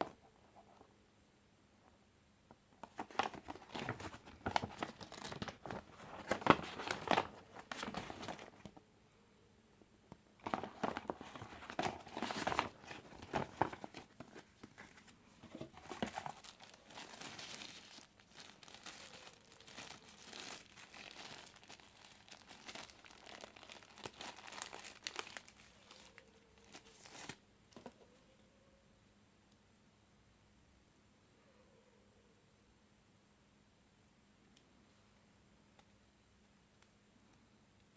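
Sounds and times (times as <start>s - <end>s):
packaging rustling: 2.8s - 8.8s, 10.4s - 28.0s.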